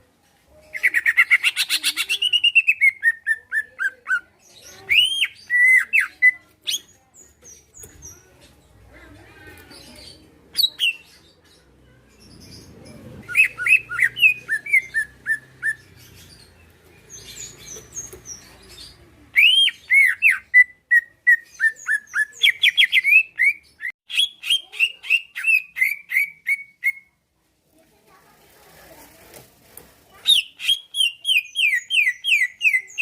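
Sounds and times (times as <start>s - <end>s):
faint high bird chirps: 9.6s - 27.2s, 30.1s - 33.0s.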